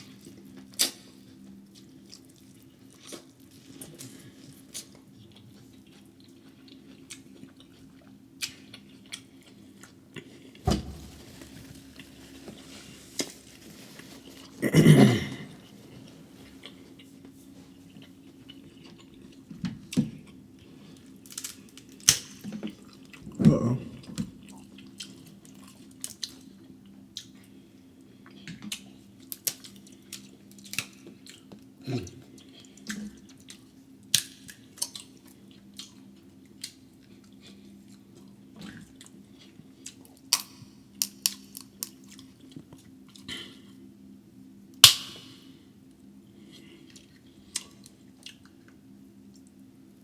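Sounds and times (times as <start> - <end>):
chewing and smacking: 0.0 - 10.6, 16.0 - 23.3, 24.0 - 43.3, 46.4 - 49.6
steady low hum: 10.5 - 18.1.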